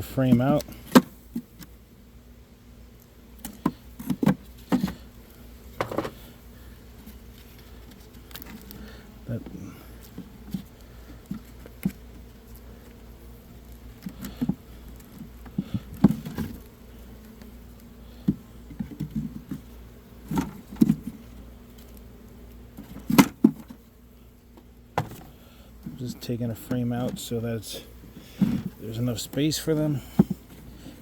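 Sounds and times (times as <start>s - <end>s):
honeybees humming: 0.0s - 31.0s
wood knocking and scraping: 3.6s - 5.0s, 5.8s - 6.2s, 25.0s - 25.3s, 28.2s - 31.0s.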